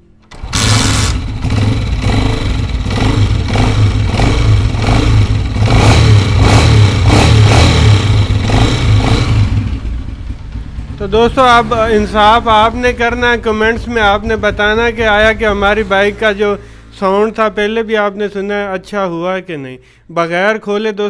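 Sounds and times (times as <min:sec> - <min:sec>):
motorcycle engine revving: 0:00.3 - 0:16.3.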